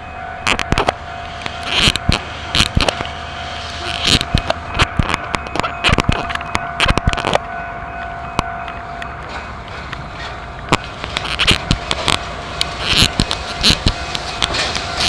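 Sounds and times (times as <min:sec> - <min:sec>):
steady tone: 0:00.0 - 0:15.0
train wheels clacking: 0:00.0 - 0:15.0.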